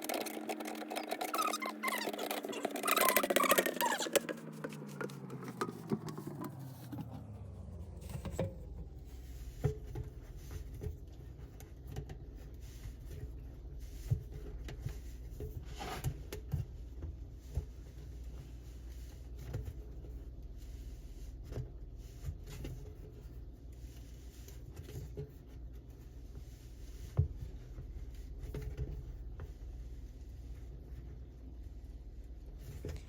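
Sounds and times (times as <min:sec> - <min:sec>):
small clicks and knocks of parts: 0:00.0 - 0:07.0
steady low hum: 0:04.0 - 0:15.5.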